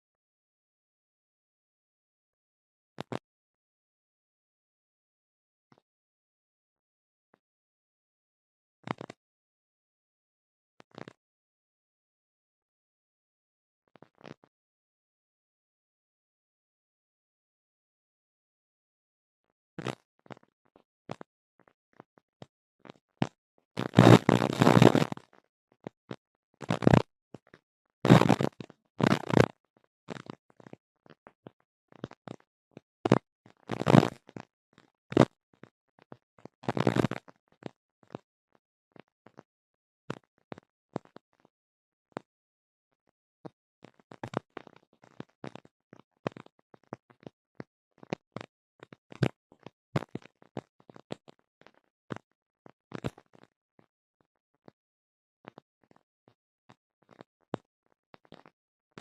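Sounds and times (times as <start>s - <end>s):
sharp clicks and pops: 3.0s - 3.2s, 8.8s - 9.2s, 19.8s - 21.3s, 21.9s - 38.3s, 40.1s - 41.5s, 43.4s - 54.8s, 55.4s - 56.0s, 56.7s - 59.0s
crackling interference noise: 19.8s - 21.3s, 22.9s - 38.3s, 43.4s - 47.4s, 48.0s - 53.5s.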